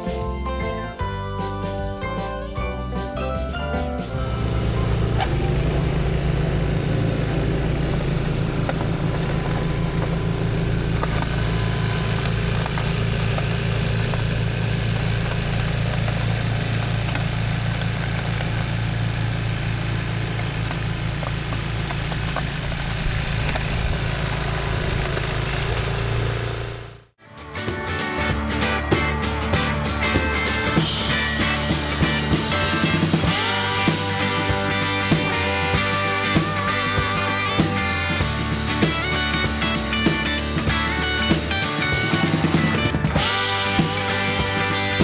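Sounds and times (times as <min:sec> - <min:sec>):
engine running steadily: 0:03.0 - 0:27.1, 0:28.0 - 0:45.0.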